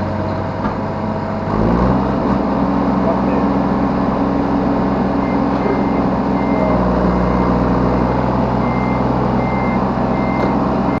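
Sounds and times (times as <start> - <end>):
diesel engine running: 0.0 - 11.0
electronic warning beeps: 5.2 - 11.0.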